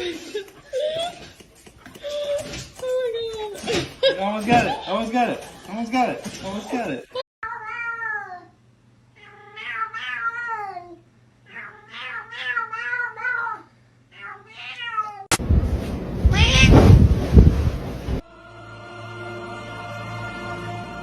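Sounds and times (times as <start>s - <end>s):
cat yowling: 7.4s - 8.5s, 9.2s - 15.3s.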